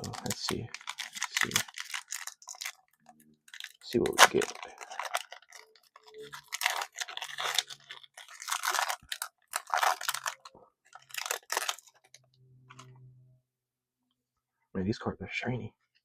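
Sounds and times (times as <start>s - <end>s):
foil wrapper tearing and crinkling: 0.0s - 12.2s.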